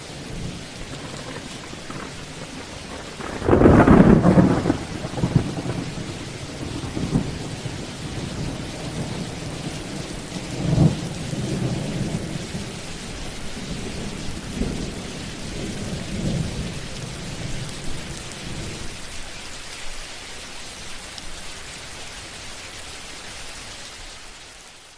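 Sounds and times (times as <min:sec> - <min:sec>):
steady rain: 0:00.0 - 0:24.9
thunder rumbling: 0:00.2 - 0:19.0.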